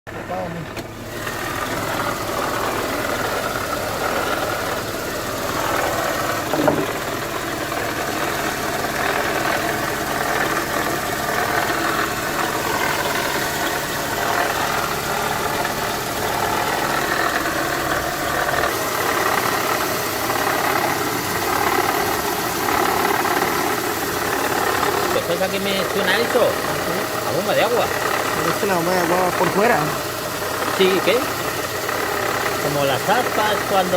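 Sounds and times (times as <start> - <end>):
car engine idling: 0.1 - 33.9
single short knock: 6.5 - 7.0.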